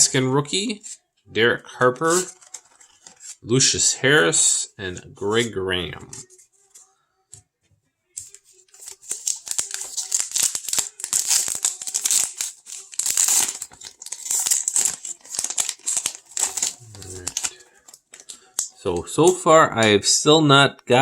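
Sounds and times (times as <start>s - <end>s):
wrapper crinkling and tearing: 2.0s - 3.4s, 8.2s - 18.8s
cards shuffled and handled: 2.0s - 3.8s, 8.2s - 19.5s.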